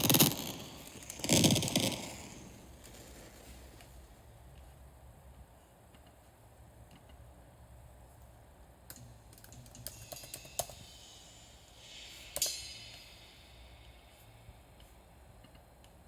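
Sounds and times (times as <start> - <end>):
rising hiss: 9.9 - 15.4.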